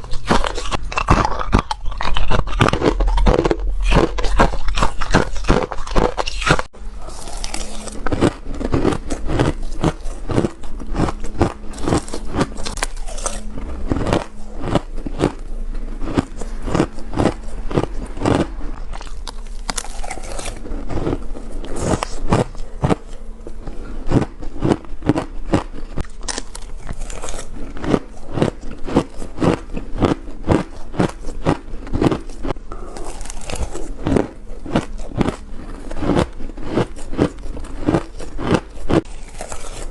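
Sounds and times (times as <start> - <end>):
ice crunching between teeth: 0.0 - 39.9.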